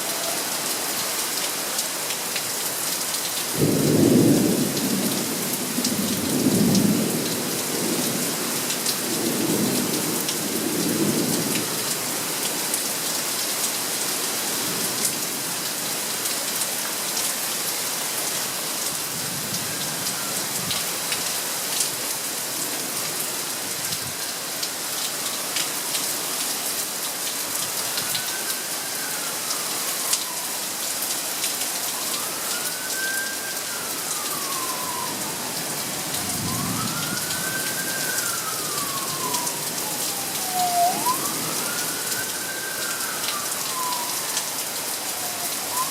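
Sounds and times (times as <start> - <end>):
siren wailing: 0.0 - 1.6, 19.2 - 21.2, 27.4 - 45.9
heavy rain pattering: 0.0 - 45.9
thunder rumbling: 3.6 - 8.3, 36.2 - 42.0.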